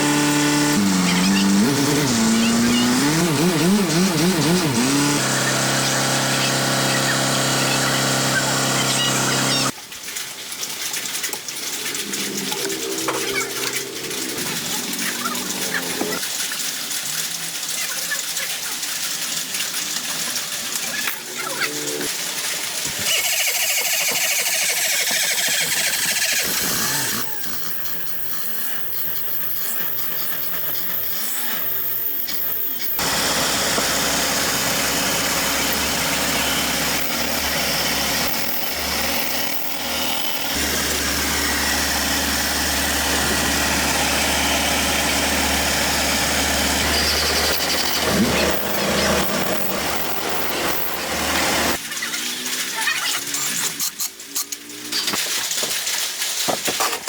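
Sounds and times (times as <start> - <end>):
car engine starting and running: 0.0 - 9.8, 33.0 - 52.6.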